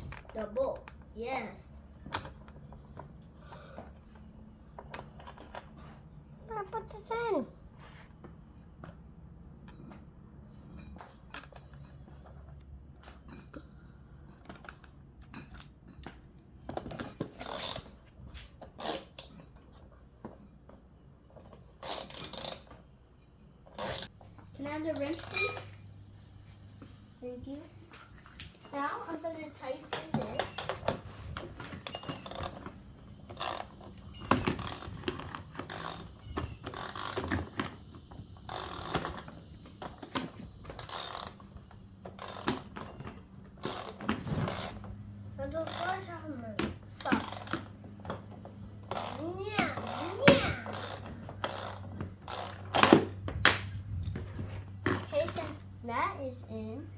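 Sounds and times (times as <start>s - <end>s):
toy parts clicking and tapping: 46.6s - 47.7s
toy wrench clicking: 49.8s - 52.7s.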